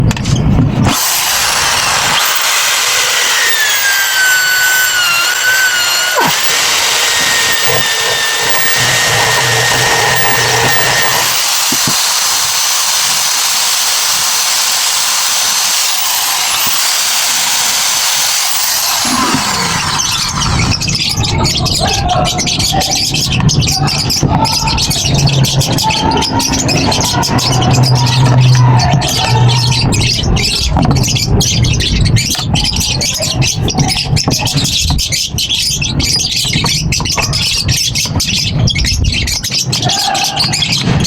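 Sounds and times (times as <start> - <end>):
power tool motor whine: 0.8 - 21.2, 25.0 - 32.4.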